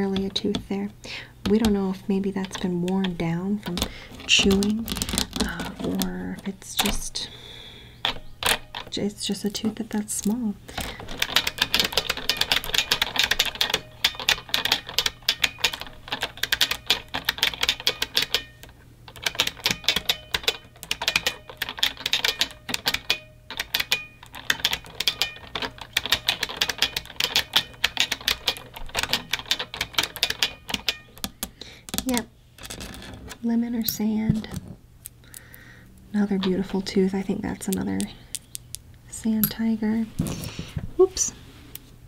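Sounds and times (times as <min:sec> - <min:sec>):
typing on mechanical keyboard: 0:10.8 - 0:31.4.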